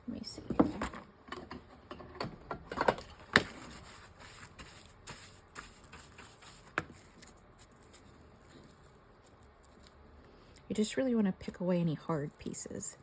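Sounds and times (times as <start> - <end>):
dry scratching and rustling: 3.4 - 10.2.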